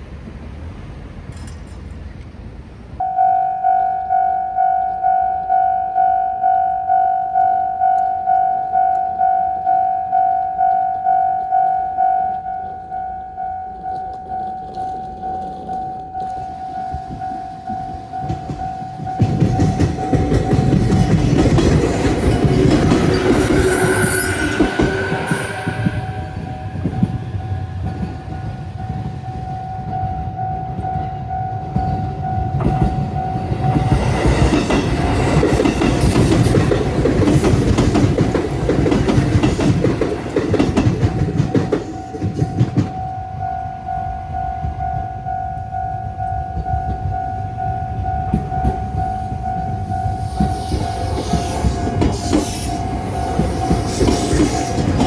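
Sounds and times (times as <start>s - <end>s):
train rumbling and clattering: 0.0s - 3.1s, 12.5s - 55.0s
level crossing warning bell: 3.0s - 55.0s
train horn: 22.2s - 30.4s, 48.3s - 55.0s.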